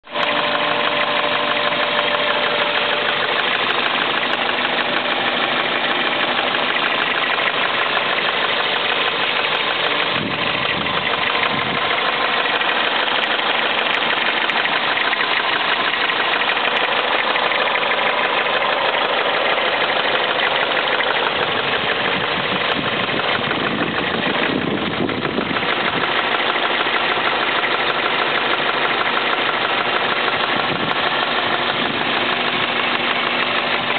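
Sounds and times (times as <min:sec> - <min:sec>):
car engine idling: 0:00.0 - 0:33.9
fast ticking knock: 0:00.2 - 0:33.9.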